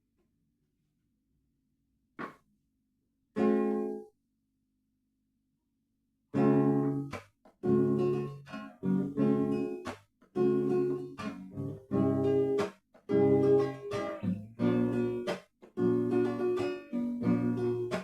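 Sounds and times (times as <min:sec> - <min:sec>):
guitar chords strummed: 0:06.4 - 0:18.0.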